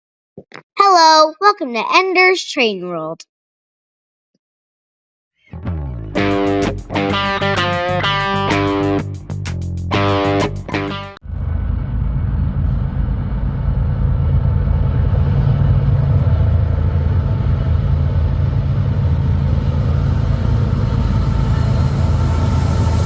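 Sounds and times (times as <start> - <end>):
freight train rumbling past: 10.0 - 23.0.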